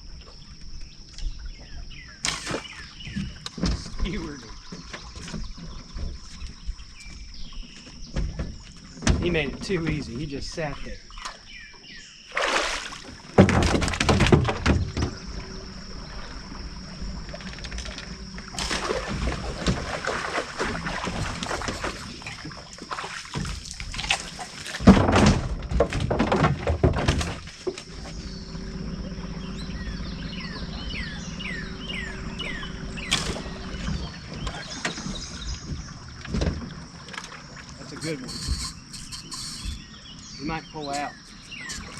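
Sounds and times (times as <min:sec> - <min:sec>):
motor hum: 0:00.0 - 0:41.9
bird chirping: 0:00.2 - 0:12.4, 0:27.9 - 0:36.1, 0:37.4 - 0:41.9
fish splashing in water: 0:12.3 - 0:15.3, 0:18.2 - 0:25.2.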